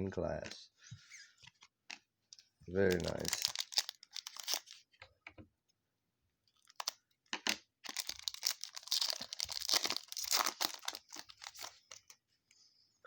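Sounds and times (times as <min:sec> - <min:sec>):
foil wrapper crinkling: 0:02.8 - 0:04.8, 0:06.6 - 0:07.0, 0:07.8 - 0:12.2
foil wrapper tearing: 0:02.8 - 0:04.8, 0:06.6 - 0:07.0, 0:07.8 - 0:12.0.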